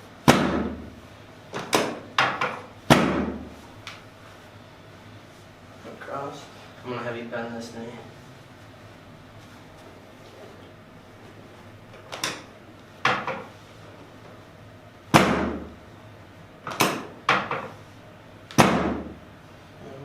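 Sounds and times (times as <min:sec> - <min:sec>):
drop table slamming down: 0:01.6 - 0:03.5, 0:18.5 - 0:19.1.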